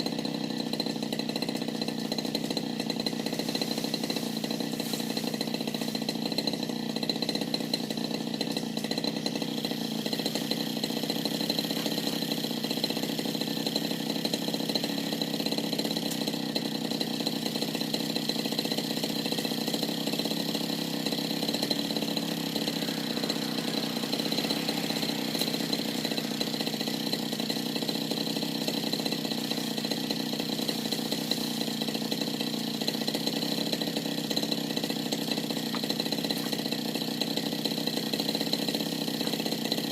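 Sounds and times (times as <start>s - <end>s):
brush cutter engine running: 0.0s - 39.9s.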